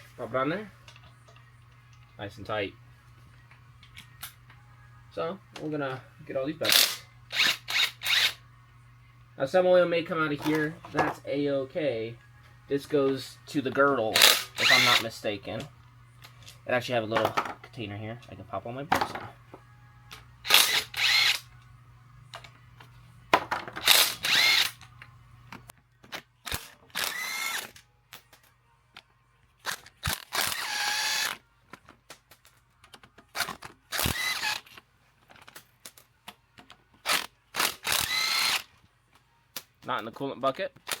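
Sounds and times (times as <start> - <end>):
cordless power tool whirring: 6.7 - 8.4, 14.2 - 15.0, 20.4 - 21.5, 23.8 - 24.8, 26.5 - 27.7, 30.0 - 31.4, 33.9 - 34.7, 37.0 - 38.7.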